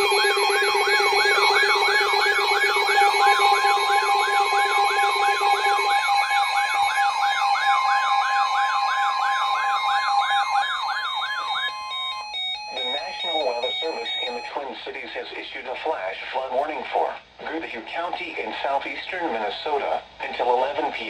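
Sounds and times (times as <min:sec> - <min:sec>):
electronic siren sweeping pitch: 0:00.0 - 0:14.5
higher steady alert tone: 0:00.0 - 0:14.5
lower steady alert tone: 0:00.0 - 0:14.5.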